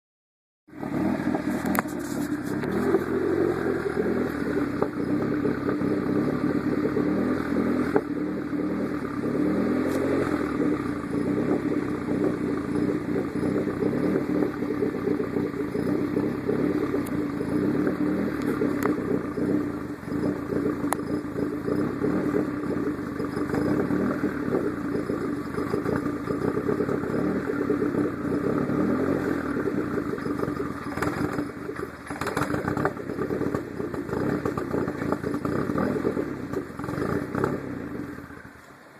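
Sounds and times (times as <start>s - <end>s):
engine misfiring with pops: 0.8s - 38.8s.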